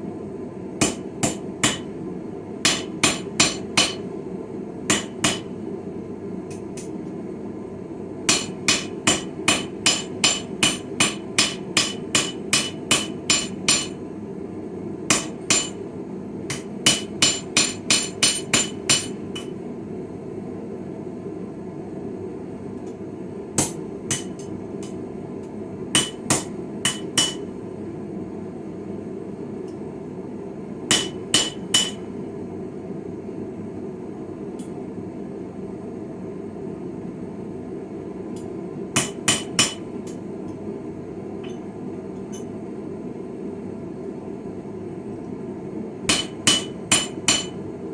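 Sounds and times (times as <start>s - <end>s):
hammer ringing on anvil: 8.3s - 14.0s, 15.1s - 15.8s, 16.5s - 19.5s, 26.0s - 27.5s, 30.9s - 32.0s, 46.1s - 47.6s.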